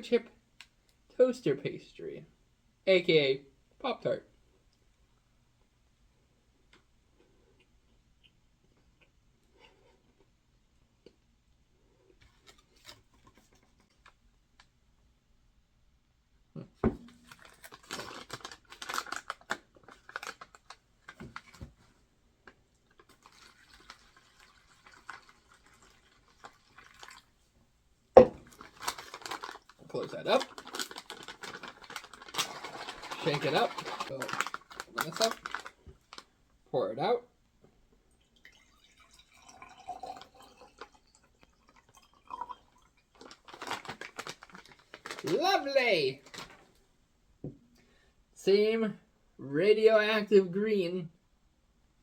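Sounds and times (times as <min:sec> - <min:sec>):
plastic pouch crinkling: 0:17.0 - 0:21.7, 0:23.0 - 0:27.2, 0:28.4 - 0:36.3, 0:43.1 - 0:46.7
drink pouring and splashing: 0:23.1 - 0:27.4, 0:28.2 - 0:35.6, 0:38.1 - 0:45.2.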